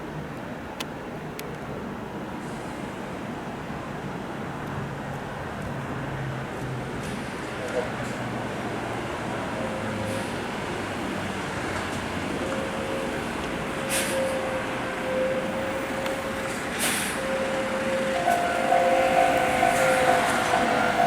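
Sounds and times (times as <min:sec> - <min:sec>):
air brake hisses: 0:13.8 - 0:14.5, 0:16.6 - 0:17.4.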